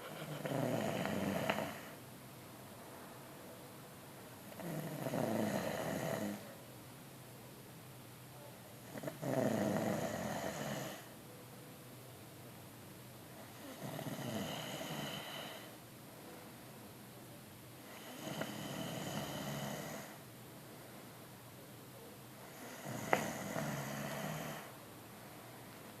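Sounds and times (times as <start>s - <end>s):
person snoring: 0.0s - 2.0s, 4.6s - 6.4s, 8.9s - 11.1s, 13.6s - 15.7s, 17.8s - 20.2s, 22.4s - 24.7s.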